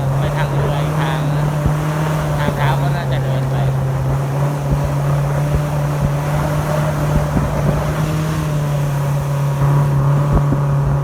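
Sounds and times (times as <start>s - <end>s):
speedboat engine droning: 0.0s - 11.0s.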